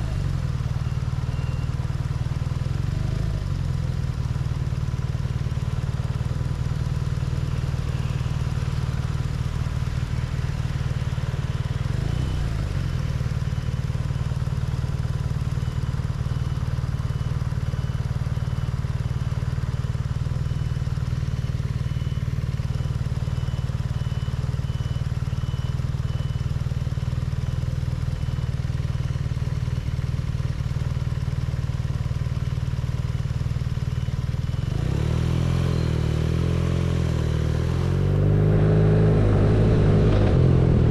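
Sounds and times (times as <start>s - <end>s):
motorcycle engine running steadily: 0.0s - 40.9s.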